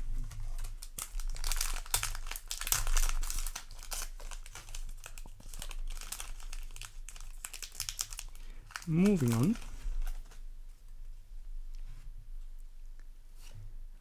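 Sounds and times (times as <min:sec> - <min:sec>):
foil wrappers crinkling: 0:00.0 - 0:10.5.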